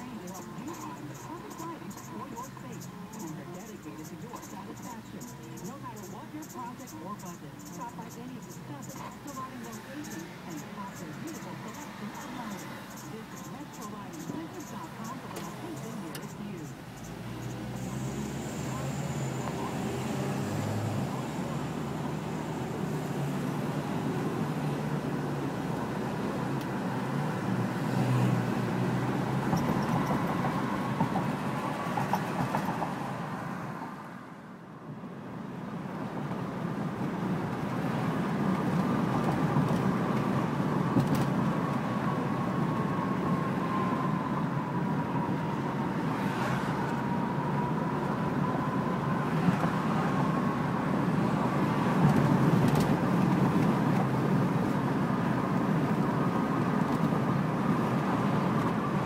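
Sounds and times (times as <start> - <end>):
car road and engine noise: 0.0 - 59.0.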